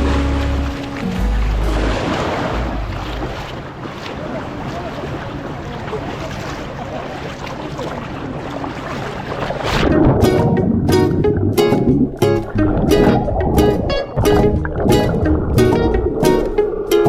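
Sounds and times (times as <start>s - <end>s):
background music: 0.0s - 3.0s, 9.9s - 17.0s
wind and water rushing: 0.0s - 17.0s.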